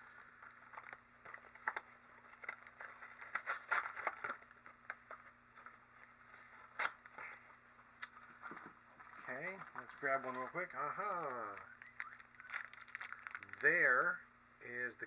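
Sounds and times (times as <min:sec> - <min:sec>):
plastic wrappers crinkling: 0:00.2 - 0:05.7, 0:08.0 - 0:13.9.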